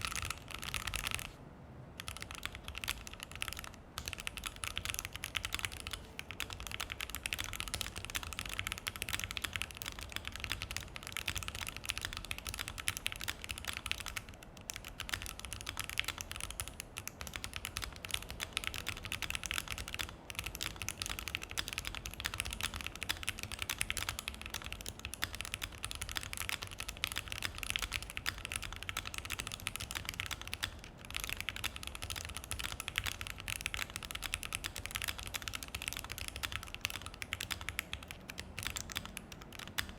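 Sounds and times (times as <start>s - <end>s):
mechanical keyboard clacking: 0.0s - 1.4s, 2.0s - 39.9s.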